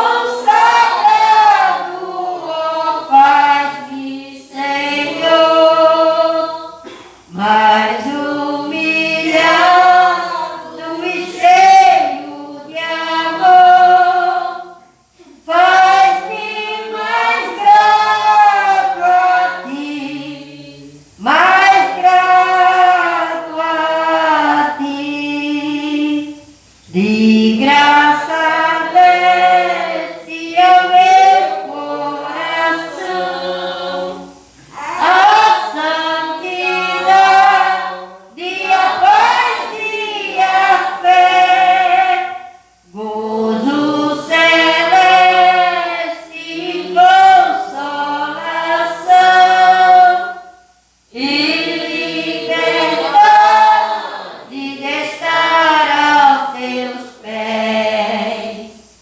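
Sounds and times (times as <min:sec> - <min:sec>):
woman singing a hymn unaccompanied: 0:00.0 - 0:59.0.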